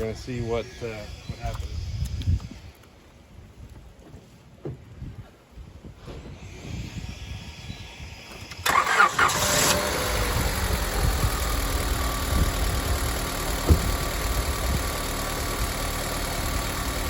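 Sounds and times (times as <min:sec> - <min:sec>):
car starter cranking: 0:08.5 - 0:17.0
car engine idling: 0:08.6 - 0:17.0.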